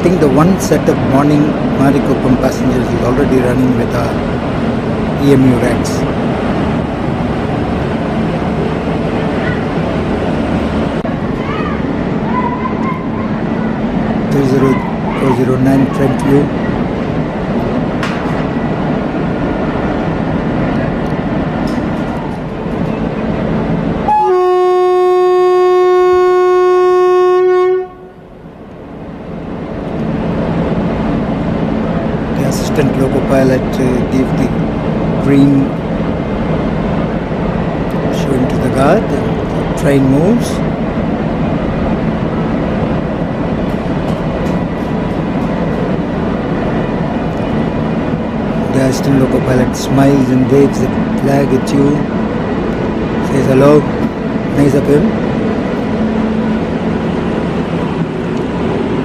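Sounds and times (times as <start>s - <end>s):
electric locomotive humming: 0.0s - 59.0s
train rumble: 0.0s - 59.0s
long train horn blast: 24.0s - 28.4s.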